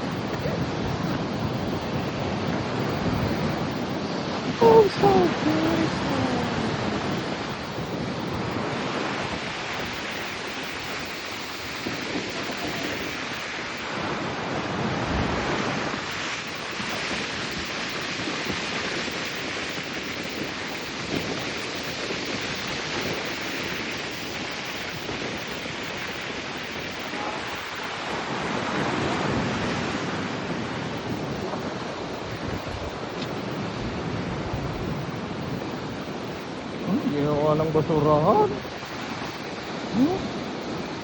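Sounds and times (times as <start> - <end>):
ocean surf breaking: 0.0 - 11.0, 27.0 - 41.0
wind on microphone: 0.0 - 41.0.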